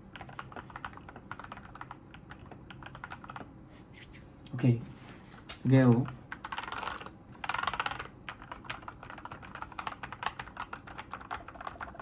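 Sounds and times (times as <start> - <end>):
mechanical keyboard typing: 0.1 - 3.5, 6.0 - 12.0.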